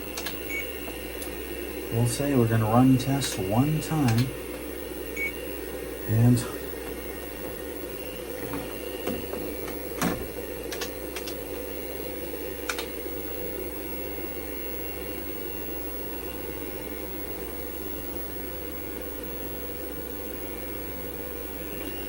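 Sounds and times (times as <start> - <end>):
computer fans and drives humming: 0.0 - 22.0.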